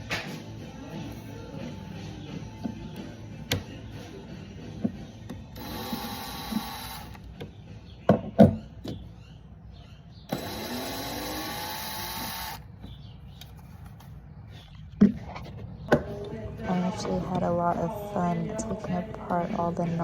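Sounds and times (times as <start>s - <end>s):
power drill whining: 5.5s - 7.3s, 10.3s - 12.7s.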